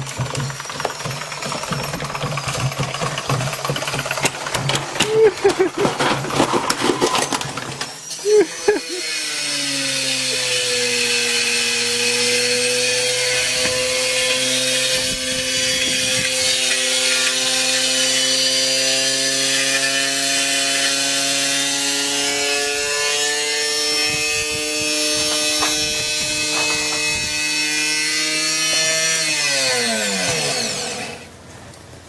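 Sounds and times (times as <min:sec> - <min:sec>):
broken parts scraping: 0:00.0 - 0:09.2, 0:11.8 - 0:31.2
washing machine motor whine: 0:07.8 - 0:29.1.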